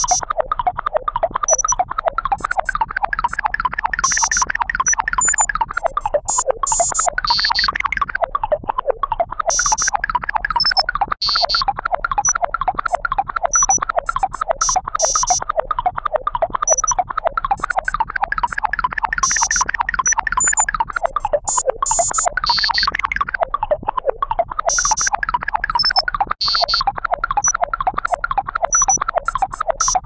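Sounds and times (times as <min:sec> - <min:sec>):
high electronic chirps: 0:01.5 - 0:01.8, 0:02.4 - 0:03.4, 0:04.8 - 0:07.6, 0:10.5 - 0:11.6, 0:12.2 - 0:15.3, 0:16.7 - 0:17.0, 0:17.6 - 0:18.6, 0:19.2 - 0:22.7, 0:25.7 - 0:26.8, 0:27.4 - 0:27.6, 0:28.6 - 0:30.0
electronic synthesizer bleeps: 0:01.5 - 0:03.5, 0:04.1 - 0:08.0, 0:10.5 - 0:15.4, 0:16.6 - 0:18.6, 0:19.2 - 0:23.3, 0:24.7 - 0:30.0.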